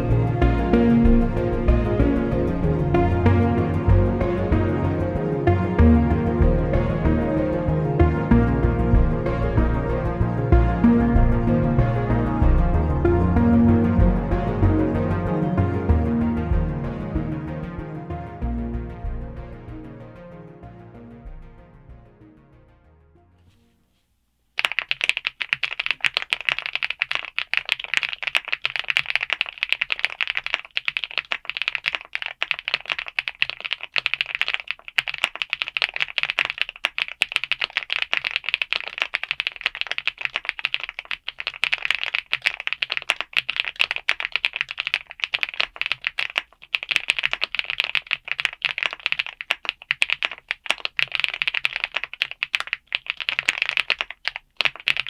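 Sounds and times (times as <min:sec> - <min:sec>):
fast mechanical keyboard typing: 0:24.6 - 0:55.0.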